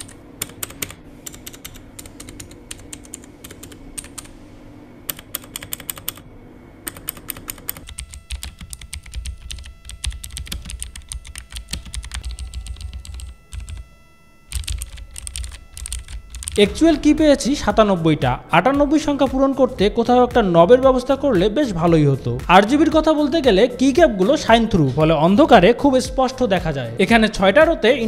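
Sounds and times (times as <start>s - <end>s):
clicky mechanical keyboard typing: 0.0s - 4.3s, 5.1s - 6.2s, 6.8s - 13.8s, 14.5s - 16.6s
low hum: 0.0s - 26.9s.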